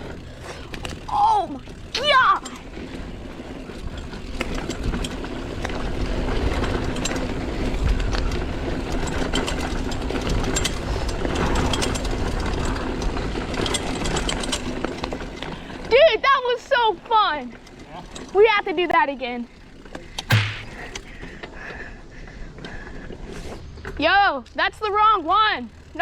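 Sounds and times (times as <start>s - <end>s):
bike clicks and rattles: 0.0s - 16.0s, 17.1s - 26.0s
bike tyres rolling on dirt: 0.0s - 16.1s.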